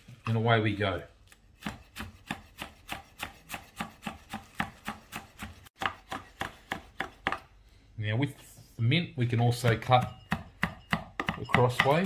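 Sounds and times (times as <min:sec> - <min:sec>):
knife chopping on cutting board: 0:01.6 - 0:07.4.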